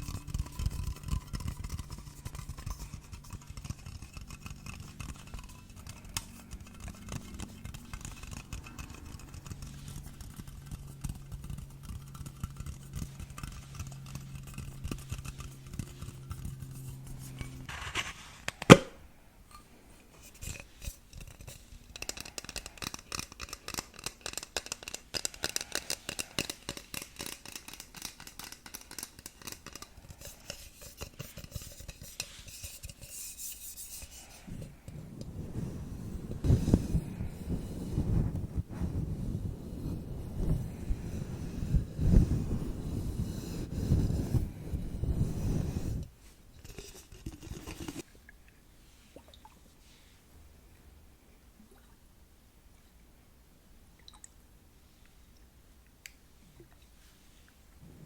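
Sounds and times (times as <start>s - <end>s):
tapping and scratching on hard object: 0.0s - 19.0s, 20.2s - 48.1s.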